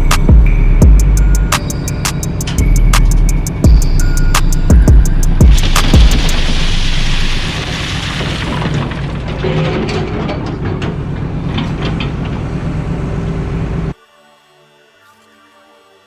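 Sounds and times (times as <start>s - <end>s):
excavator engine under load: 1.3s - 14.0s
wood and siding cracking: 5.6s - 11.9s.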